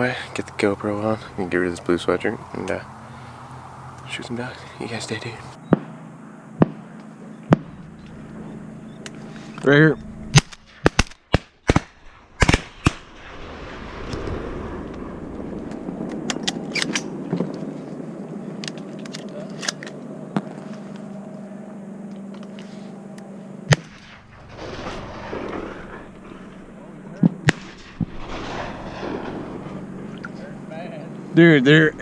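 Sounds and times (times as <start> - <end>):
shotguns firing: 6.6 - 6.9, 7.5 - 8.2, 23.7 - 30.7.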